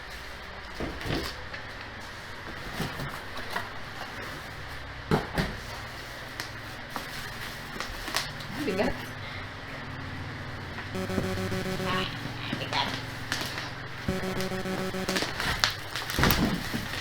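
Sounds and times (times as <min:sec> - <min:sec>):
bubble wrap rustling: 0:06.2 - 0:08.4, 0:15.1 - 0:17.0.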